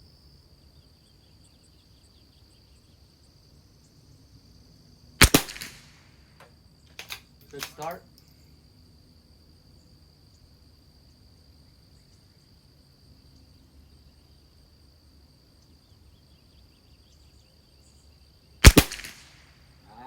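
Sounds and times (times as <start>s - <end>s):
crickets buzzing: 0.0s - 20.0s
rifle shot crack with echo: 5.2s - 6.2s, 18.6s - 19.6s.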